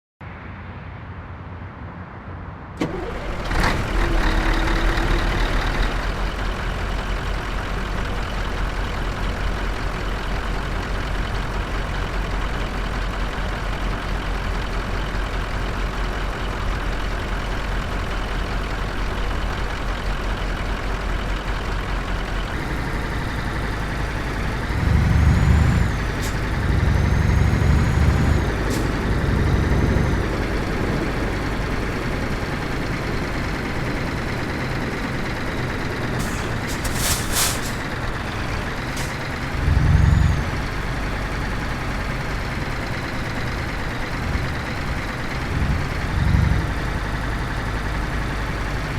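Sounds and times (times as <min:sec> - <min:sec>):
engine revving: 0:02.8 - 0:06.6, 0:22.5 - 0:48.9
diesel truck engine running: 0:02.8 - 0:48.9.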